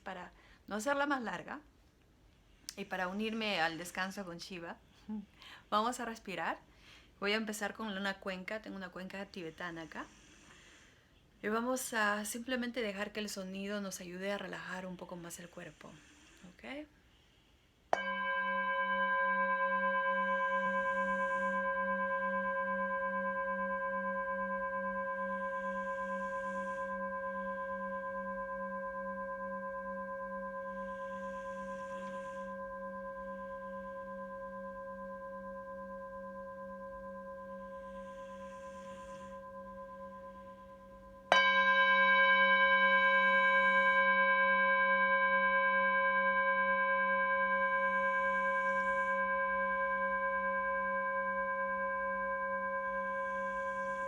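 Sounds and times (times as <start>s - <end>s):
soft breaths: 6.6s - 7.2s, 9.2s - 11.5s, 14.9s - 17.9s, 25.4s - 27.1s, 30.7s - 32.7s, 37.5s - 41.0s
singing bowl ringing: 18.0s - 54.0s.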